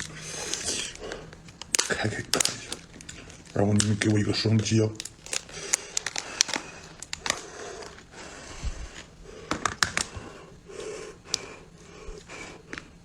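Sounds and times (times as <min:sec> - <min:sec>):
crab shell cracking and clicking: 0:00.0 - 0:04.2, 0:05.0 - 0:08.1, 0:09.4 - 0:10.2, 0:10.8 - 0:11.6.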